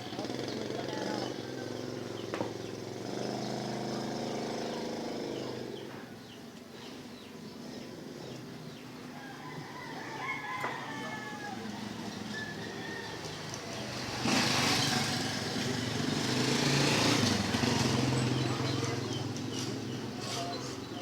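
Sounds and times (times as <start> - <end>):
engine hum: 0.0 - 9.1, 11.5 - 21.0
rooster crowing: 9.1 - 13.6.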